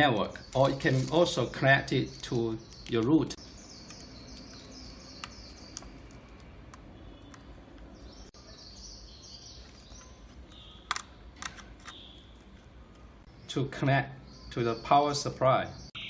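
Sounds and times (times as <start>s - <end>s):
faint birds chirping: 0.0s - 16.0s
sharp clicks: 10.0s - 12.0s.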